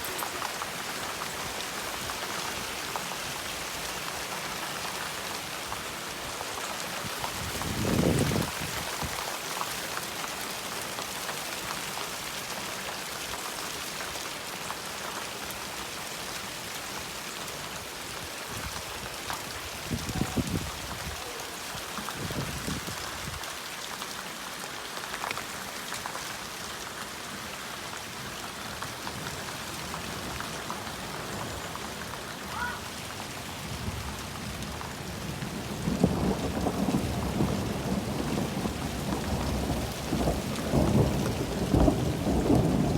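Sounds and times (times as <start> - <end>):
heavy rain and hail: 0.0 - 42.9
thunder rumbling: 35.3 - 42.9.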